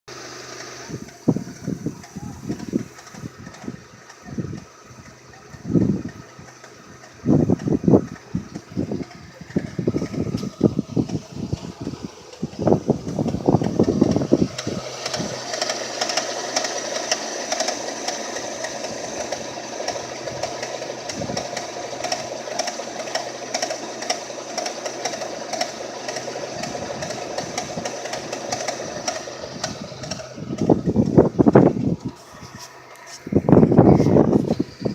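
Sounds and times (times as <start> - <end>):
car engine idling: 0.1 - 34.9
fast rhythmic engine ticking: 0.1 - 34.9
low bumps: 26.5 - 34.9.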